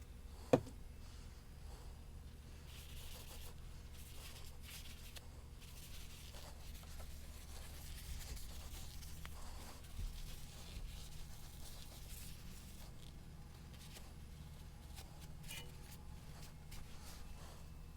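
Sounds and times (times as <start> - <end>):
low steady hum: 0.0 - 17.9
soft knock: 0.5 - 0.8
faint scraping and rubbing: 2.5 - 17.9.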